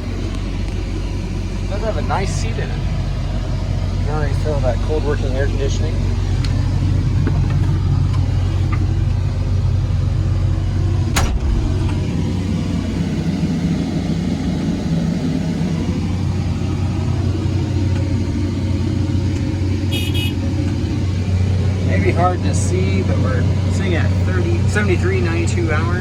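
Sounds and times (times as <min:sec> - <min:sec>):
diesel engine low hum: 0:00.0 - 0:26.0.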